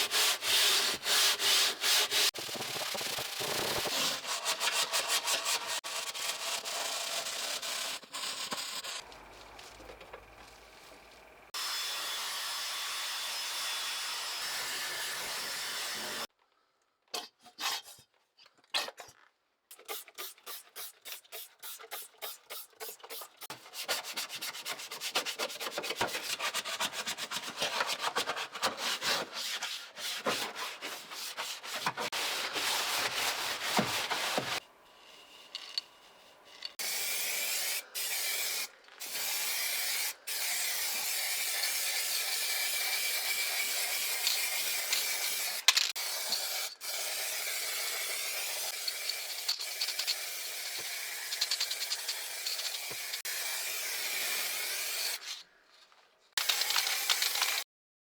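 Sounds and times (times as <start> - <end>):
hand sanding strokes: 0.0 - 9.0, 20.2 - 34.6.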